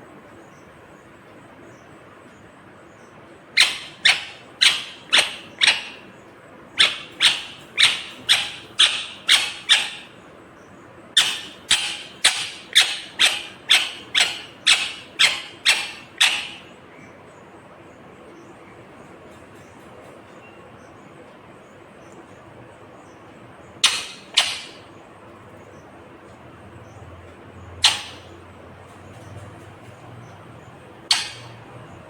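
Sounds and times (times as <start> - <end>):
parakeet screeching: 3.6 - 6.1, 6.8 - 10.2, 11.2 - 16.7, 23.8 - 24.9, 27.8 - 28.4, 31.0 - 32.0.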